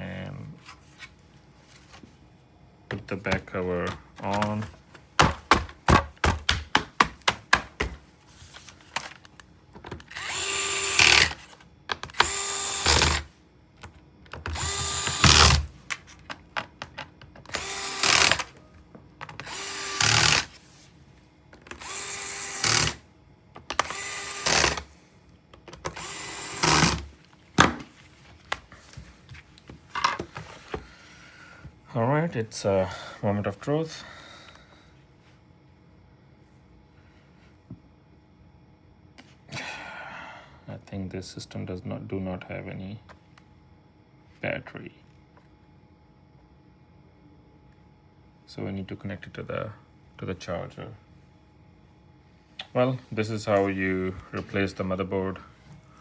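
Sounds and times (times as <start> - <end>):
electric screwdriver driving screws: 10.0 - 13.3, 14.5 - 15.7, 17.5 - 18.5, 19.4 - 20.6, 21.8 - 23.0, 23.7 - 24.9, 25.8 - 27.1.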